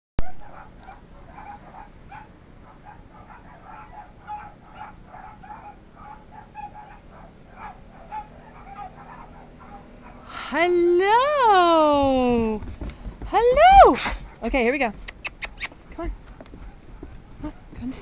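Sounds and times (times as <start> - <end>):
dog whining: 2.9 - 10.4.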